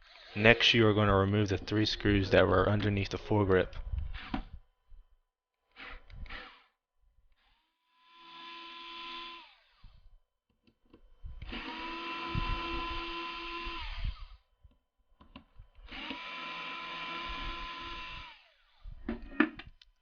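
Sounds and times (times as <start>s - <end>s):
power screwdriver whining: 4.0s - 4.6s, 5.7s - 10.1s, 11.4s - 14.5s, 15.8s - 19.0s.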